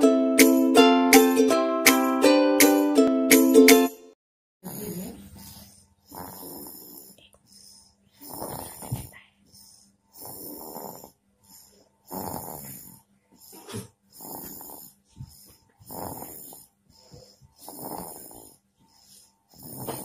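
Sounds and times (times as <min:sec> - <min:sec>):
baby snoring: 0:04.6 - 0:20.0.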